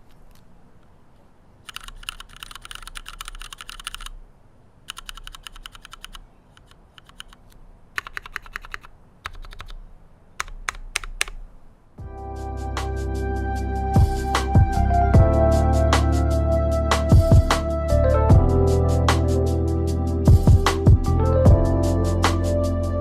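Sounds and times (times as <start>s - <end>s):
mechanical keyboard typing clacks: 1.6s - 4.2s, 4.9s - 9.8s, 10.4s - 11.4s.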